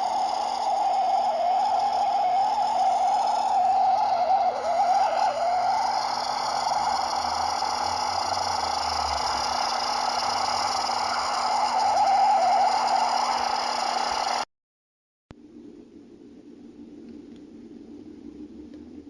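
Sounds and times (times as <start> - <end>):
hissing drone: 0.0 - 14.5
wavering mid-pitched whine: 0.0 - 14.5
faint low hum: 15.3 - 19.0.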